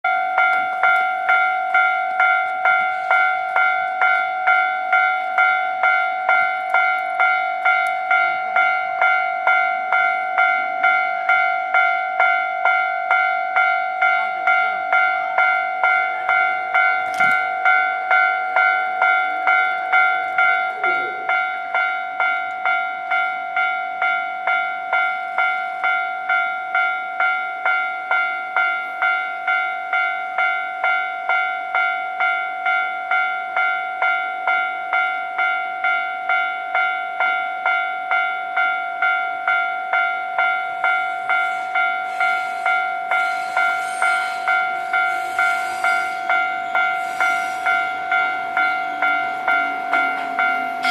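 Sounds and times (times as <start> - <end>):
approaching train: 0.0 - 50.9
level crossing bell clanging: 0.0 - 50.9.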